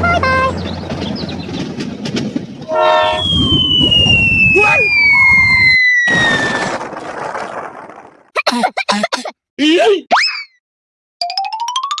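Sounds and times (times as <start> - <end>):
vehicle rumbling: 0.0 - 5.3.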